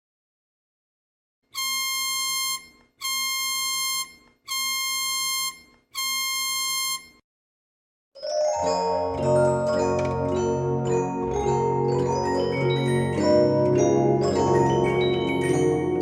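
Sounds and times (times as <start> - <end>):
emergency alert buzzy beeps: 1.6 - 7.2.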